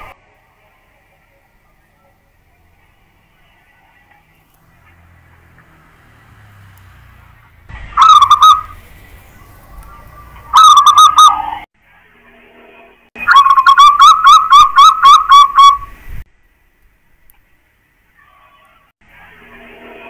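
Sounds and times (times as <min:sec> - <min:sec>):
dove cooing: 0:08.0 - 0:08.8, 0:09.9 - 0:11.6, 0:13.3 - 0:15.8.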